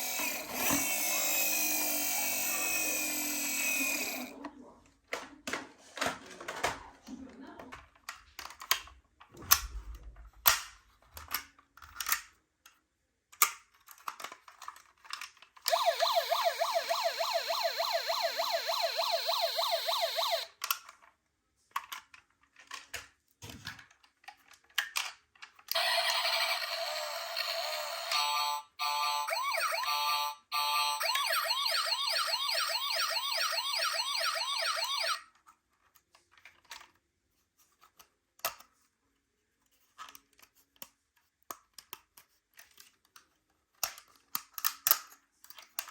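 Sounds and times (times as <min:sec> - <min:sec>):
toy siren warbling: 0:00.0 - 0:04.3, 0:15.7 - 0:20.5, 0:25.7 - 0:35.2.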